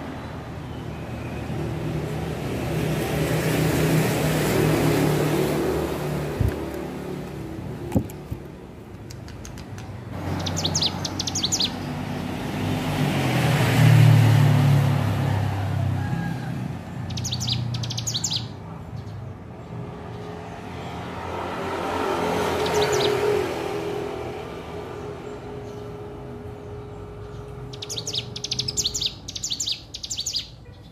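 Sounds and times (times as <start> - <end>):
traffic rumble: 0.0 - 30.9
songbird chirping: 6.2 - 12.5, 17.0 - 20.8, 22.4 - 23.4, 24.4 - 30.9.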